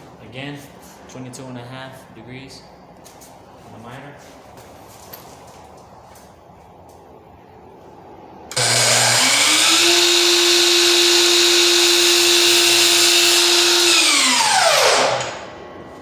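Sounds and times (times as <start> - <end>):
miter saw whining: 8.5 - 15.8.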